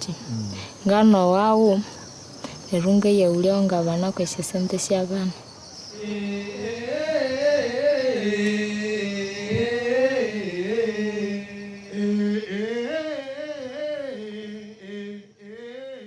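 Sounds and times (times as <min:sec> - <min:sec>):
person singing: 0:06.0 - 0:16.0.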